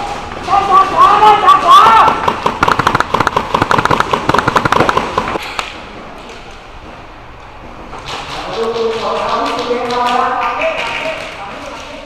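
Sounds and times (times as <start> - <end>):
bb guns firing rapid bursts: 1.8 - 5.4.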